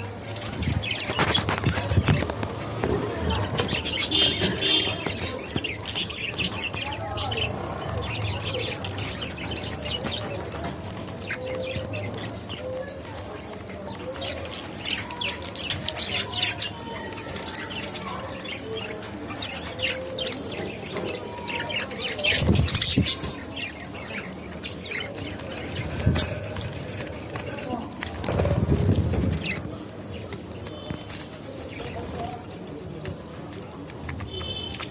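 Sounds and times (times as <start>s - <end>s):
budgerigars chirping: 3.4s - 10.2s.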